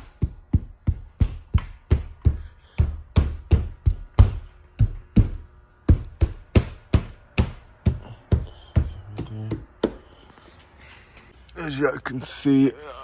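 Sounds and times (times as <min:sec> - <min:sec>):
knocks on sheet-metal car roof: 0:00.0 - 0:10.0.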